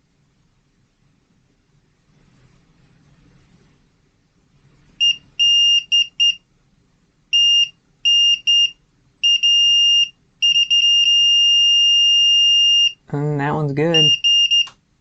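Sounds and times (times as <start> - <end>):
multimeter continuity beep: 5.0 - 6.4, 7.3 - 13.0, 13.9 - 14.8.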